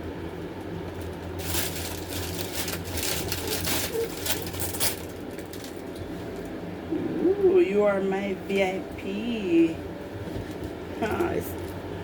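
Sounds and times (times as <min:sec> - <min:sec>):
plastic packaging crinkling: 0:00.2 - 0:06.5.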